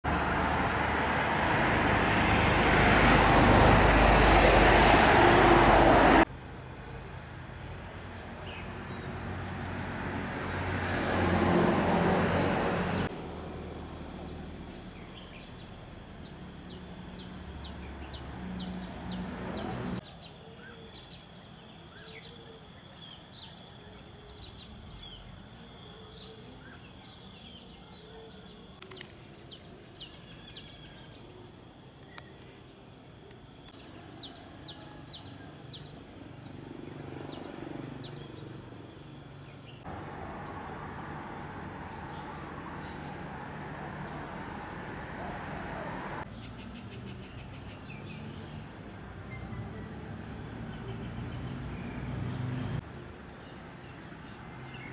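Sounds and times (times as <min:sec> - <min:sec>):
vehicle passing loudly: 0:00.0 - 0:06.3, 0:08.6 - 0:20.0, 0:36.3 - 0:39.1, 0:39.8 - 0:46.3, 0:47.5 - 0:53.0
low engine hum: 0:00.0 - 0:20.0
birds chirping: 0:14.2 - 0:31.4, 0:32.0 - 0:54.9.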